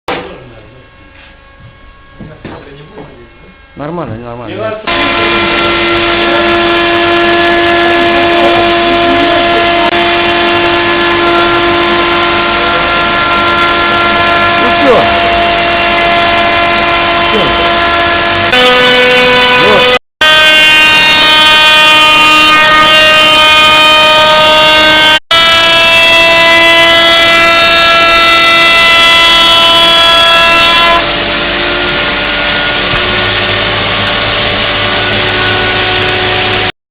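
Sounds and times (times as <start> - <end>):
dull machine noise with low hum: 0.1 - 6.6
milling machine cutting wood panel: 4.9 - 20.0, 25.4 - 36.7.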